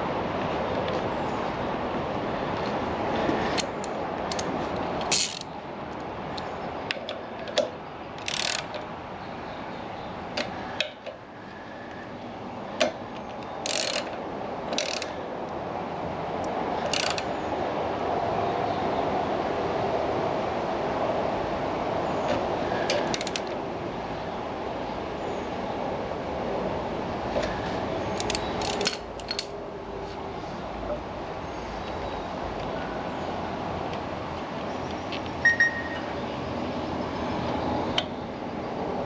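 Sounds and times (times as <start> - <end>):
steady background hiss: 0.0 - 39.0
hand tools clicking on metal: 3.5 - 5.5, 6.4 - 8.8, 12.8 - 15.1, 16.8 - 17.3, 22.9 - 23.5, 28.2 - 29.5
ratchet wrench clicking: 3.5 - 5.5, 8.2 - 8.8, 13.4 - 15.1, 16.8 - 17.3, 23.0 - 23.5, 28.2 - 29.5.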